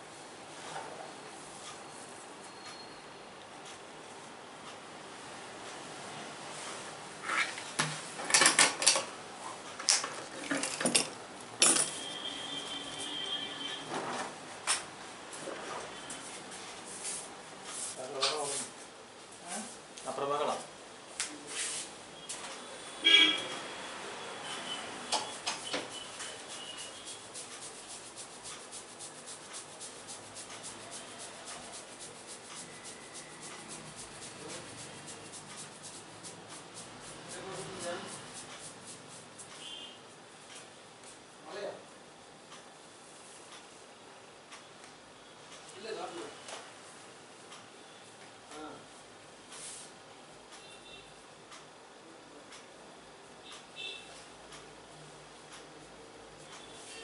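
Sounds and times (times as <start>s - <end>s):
faint high ringing tone: 1.0s - 3.3s, 11.8s - 13.9s, 50.6s - 51.1s
hair cracking head massage: 26.4s - 39.5s.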